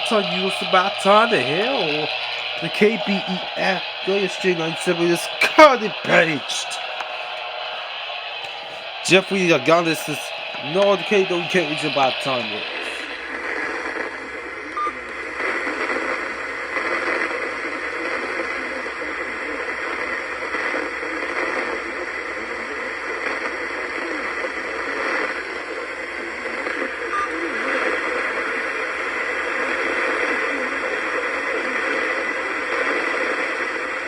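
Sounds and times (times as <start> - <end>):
radio static hiss: 0.0 - 13.3.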